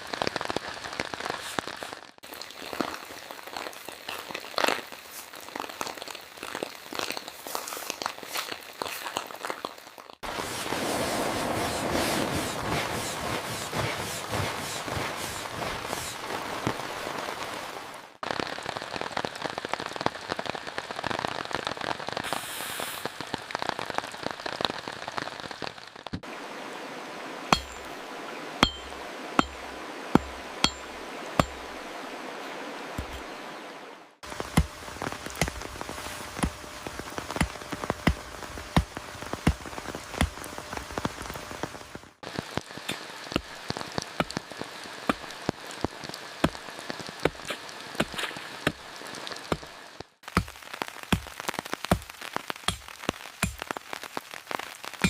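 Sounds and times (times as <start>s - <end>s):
rain pattering on a surface: 0.0s - 33.4s, 34.2s - 55.0s
heavy drips tapping: 28.6s - 31.8s.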